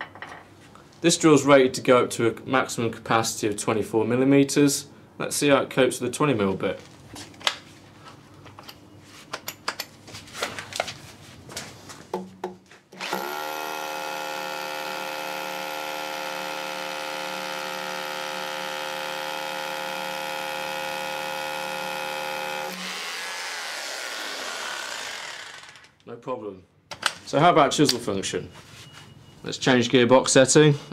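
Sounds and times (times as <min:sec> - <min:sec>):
rotary hammer drill drilling concrete: 0:13.0 - 0:25.9.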